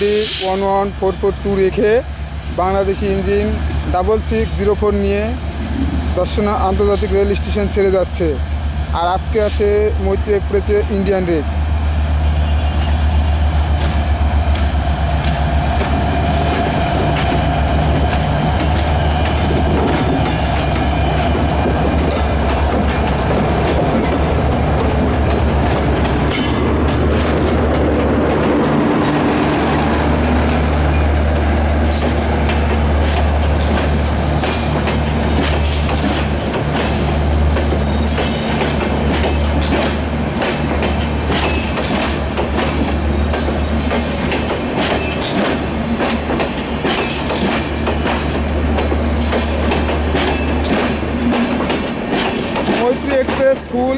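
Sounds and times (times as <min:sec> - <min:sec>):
train wheels clicking over rail joints: 0:13.7 - 0:53.9
high wheel squeal: 0:45.0 - 0:47.3.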